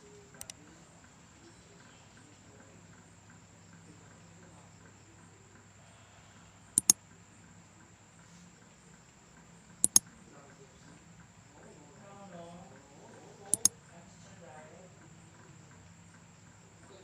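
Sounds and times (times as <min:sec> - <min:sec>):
insects chirring: 0:06.7 - 0:07.9, 0:08.8 - 0:14.1
sharp double click: 0:06.8 - 0:07.0, 0:09.8 - 0:10.0, 0:13.5 - 0:13.7.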